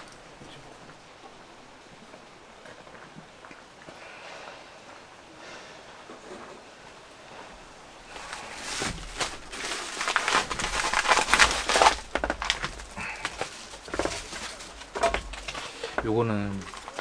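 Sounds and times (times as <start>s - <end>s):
plastic packaging crinkling: 8.0s - 17.0s.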